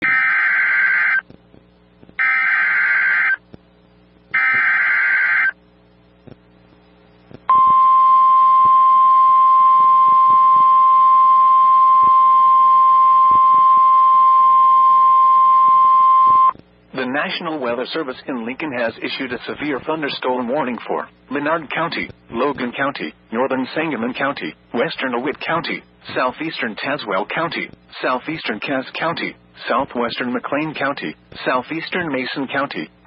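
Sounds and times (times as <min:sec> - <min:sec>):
buzzy warbling data bursts: 0:00.0 - 0:01.2, 0:02.2 - 0:03.4, 0:04.3 - 0:05.6
high-pitched warning alarm tone: 0:04.4 - 0:05.6.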